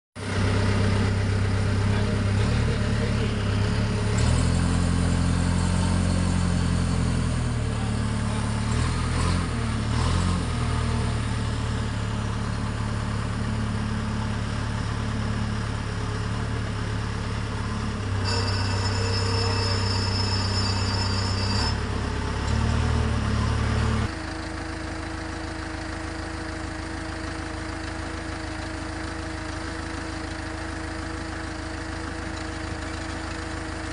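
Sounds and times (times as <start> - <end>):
backhoe engine running: 0.2 - 33.9
high whine: 17.6 - 22.7.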